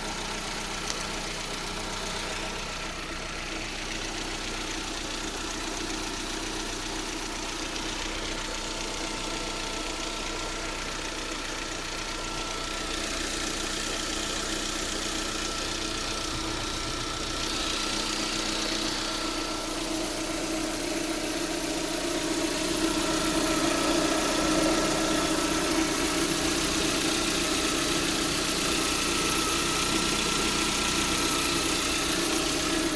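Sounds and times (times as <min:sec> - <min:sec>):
car engine idling: 0:00.0 - 0:32.9
steady high whistle: 0:15.6 - 0:32.9.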